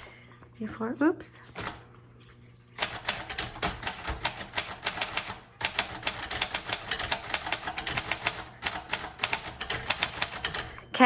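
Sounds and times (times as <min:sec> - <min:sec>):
typewriter key strikes: 0:01.6 - 0:01.8, 0:02.8 - 0:10.9.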